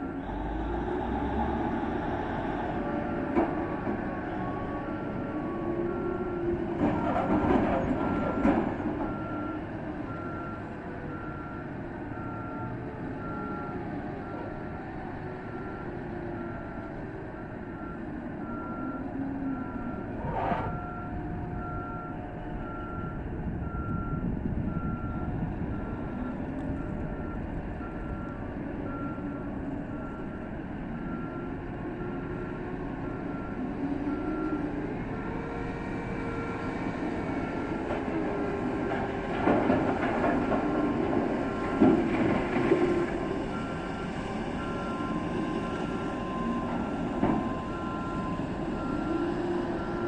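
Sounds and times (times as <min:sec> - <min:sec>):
heavy machinery rumble: 0:00.0 - 0:50.0
reversing alarm beeping: 0:17.4 - 0:38.6, 0:43.5 - 0:50.0.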